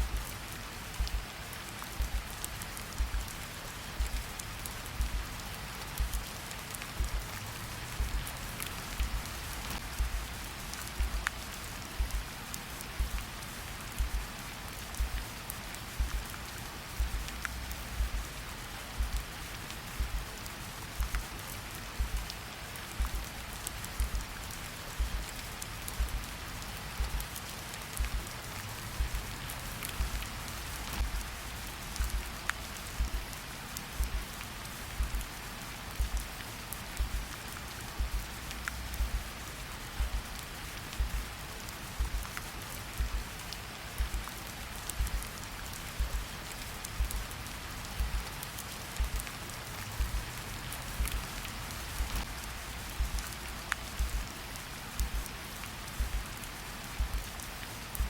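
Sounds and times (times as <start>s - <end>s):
slow heartbeat thumps: 0.0s - 0.3s, 1.0s - 1.3s, 2.0s - 2.4s, 3.0s - 3.3s, 4.0s - 4.3s, 5.0s - 5.3s, 6.0s - 6.3s, 7.0s - 7.3s, 7.9s - 8.3s, 8.9s - 10.4s, 11.0s - 11.3s, 12.0s - 12.3s, 13.0s - 13.3s, 14.0s - 14.3s, 15.0s - 15.3s, 16.0s - 16.3s, 17.0s - 18.3s, 19.0s - 19.3s, 20.0s - 20.4s, 21.0s - 21.3s, 22.0s - 22.3s, 23.0s - 23.3s, 23.9s - 24.3s, 25.0s - 25.3s, 25.9s - 26.3s, 27.0s - 27.3s, 28.0s - 28.3s, 28.9s - 29.3s, 30.0s - 30.3s, 30.9s - 31.4s, 32.0s - 32.3s, 33.0s - 33.3s, 34.0s - 34.4s, 35.0s - 35.3s, 36.0s - 36.4s, 37.0s - 37.3s, 38.0s - 39.3s, 40.0s - 40.3s, 41.0s - 41.3s, 42.0s - 42.4s, 43.0s - 43.4s, 44.0s - 44.3s, 45.0s - 45.3s, 46.0s - 46.3s, 47.0s - 47.3s, 48.0s - 48.3s, 49.0s - 49.3s, 50.0s - 50.3s, 51.0s - 51.3s, 52.0s - 52.3s, 53.0s - 53.3s, 54.0s - 54.3s, 55.0s - 55.2s, 56.0s - 56.3s, 57.0s - 57.3s
steady rain falling: 0.0s - 58.0s.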